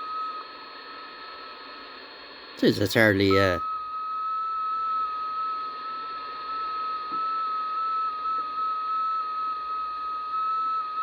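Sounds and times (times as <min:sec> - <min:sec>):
receiver hiss: 0:00.0 - 0:11.0
whistling data tone from radio: 0:00.0 - 0:11.0.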